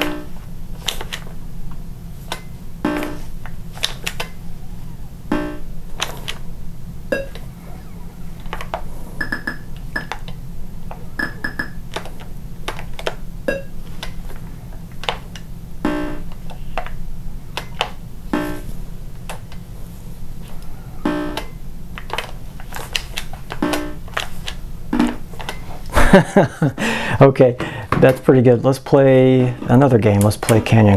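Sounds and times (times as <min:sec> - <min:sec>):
steady low hum: 0:00.0 - 0:30.9
electronic game beeps and blips: 0:02.8 - 0:03.3, 0:05.3 - 0:05.7, 0:07.1 - 0:08.5, 0:09.2 - 0:10.2, 0:11.2 - 0:11.8, 0:15.8 - 0:16.2, 0:18.3 - 0:18.7, 0:21.0 - 0:21.5, 0:23.6 - 0:24.0.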